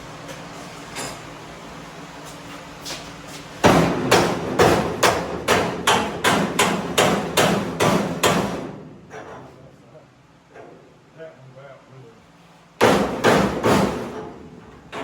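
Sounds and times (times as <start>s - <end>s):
hammer pounding on steel: 3.6s - 8.9s, 12.8s - 14.4s.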